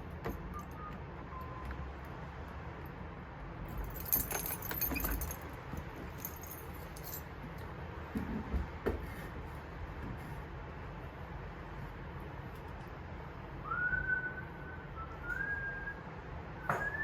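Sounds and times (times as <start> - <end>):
small metal objects clinking: 3.8 - 5.5, 6.1 - 7.2.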